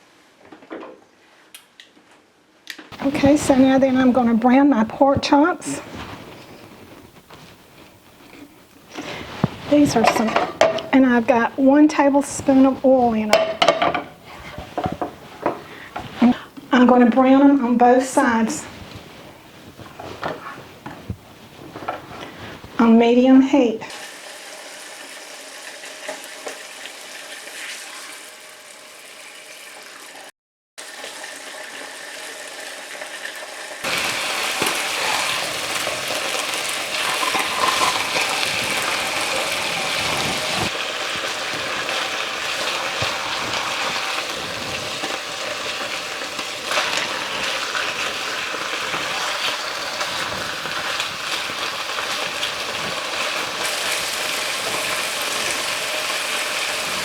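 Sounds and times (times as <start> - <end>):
meat sizzling in hot oil: 23.9 - 57.0.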